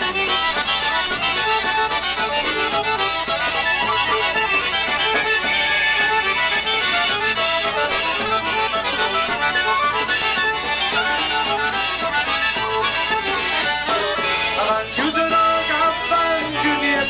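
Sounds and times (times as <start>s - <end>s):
accordion melody: 0.0s - 17.0s
polka band playing: 0.0s - 17.0s.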